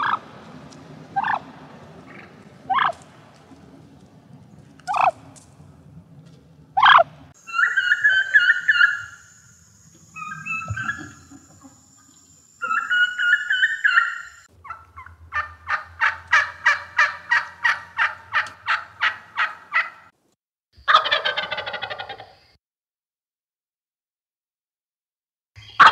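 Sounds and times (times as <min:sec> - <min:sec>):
wild turkey gobbling: 0:01.1 - 0:03.6, 0:04.8 - 0:05.2, 0:06.8 - 0:20.1, 0:20.9 - 0:22.4
turkey yelps: 0:01.2 - 0:01.5, 0:02.1 - 0:03.0, 0:04.9 - 0:05.2, 0:06.8 - 0:09.2, 0:10.1 - 0:11.8, 0:12.6 - 0:20.0, 0:20.9 - 0:22.3.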